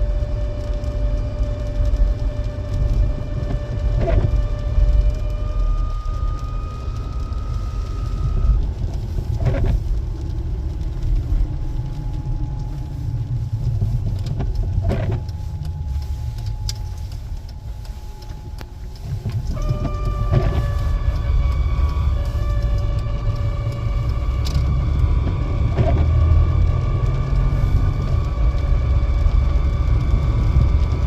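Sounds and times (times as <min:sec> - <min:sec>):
car engine rumble: 0:00.0 - 0:31.0
high-pitched engine squeal: 0:19.5 - 0:26.9.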